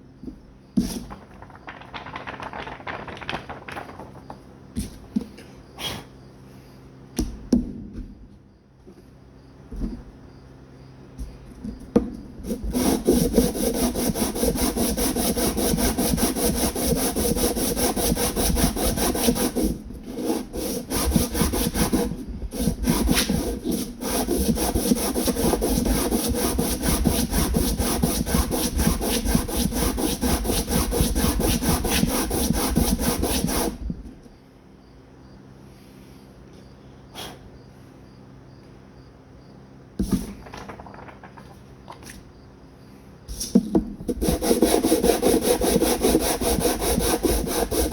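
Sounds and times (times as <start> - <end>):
sandpaper sanding strokes: 12.5 - 33.9, 44.1 - 47.9.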